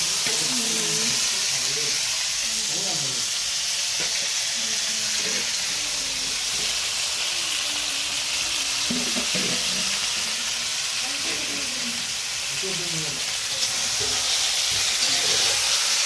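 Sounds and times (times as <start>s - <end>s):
food sizzling in oil: 0.0s - 16.0s.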